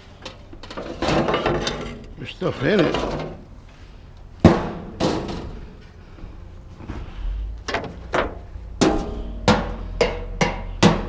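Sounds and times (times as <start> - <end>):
sheet metal knocks and clanks: 4.4 - 5.6, 7.7 - 11.0.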